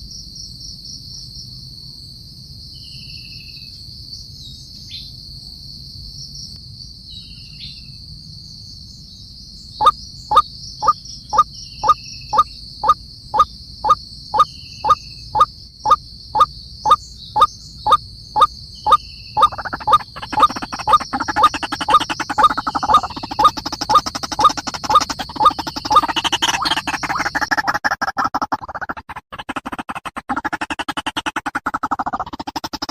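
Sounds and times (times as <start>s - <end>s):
high insect drone: 2.8s - 27.5s
faint short chirps: 9.8s - 15.5s, 16.4s - 21.2s
frog calling: 9.8s - 29.0s
chorus of rapid calls: 11.8s - 13.5s, 17.4s - 32.9s.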